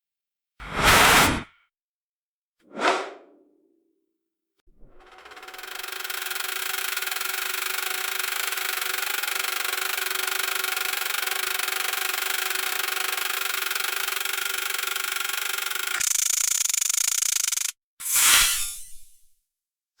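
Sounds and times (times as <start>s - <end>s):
hiss: 18.0s - 19.2s.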